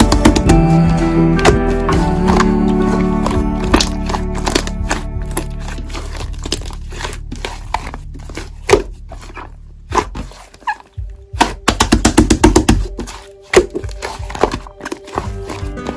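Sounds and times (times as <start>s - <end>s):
background music: 0.0s - 15.9s
slime squishing and popping: 2.3s - 10.8s.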